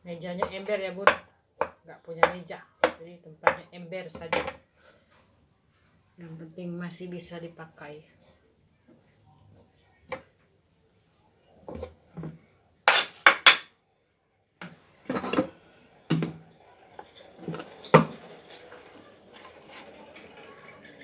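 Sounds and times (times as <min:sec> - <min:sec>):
dishes and utensils clinking: 0:15.1 - 0:21.0.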